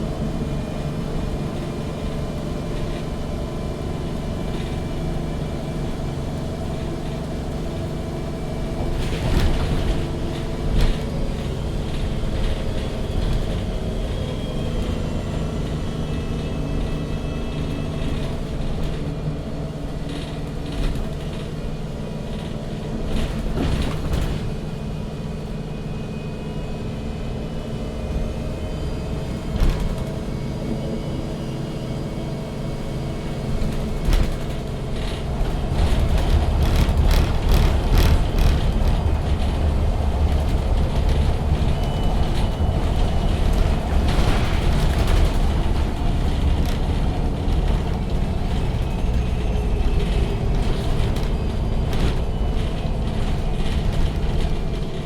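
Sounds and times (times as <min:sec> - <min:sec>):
bus engine running: 0:00.0 - 0:55.0
knocks and rattles: 0:33.6 - 0:55.0.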